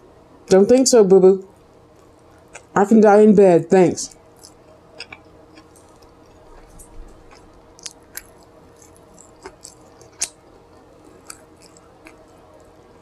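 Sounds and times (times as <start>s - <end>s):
close chewing: 4.1s - 13.0s.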